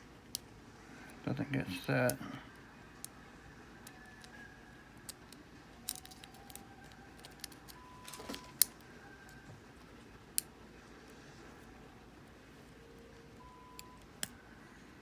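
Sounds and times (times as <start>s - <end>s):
lock pick scraping in padlock: 5.0s - 8.7s.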